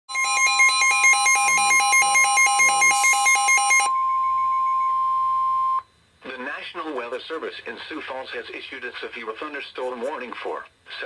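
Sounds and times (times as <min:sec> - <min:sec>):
fast pulsing beep: 0:00.1 - 0:05.9
steady alarm tone: 0:00.1 - 0:06.1.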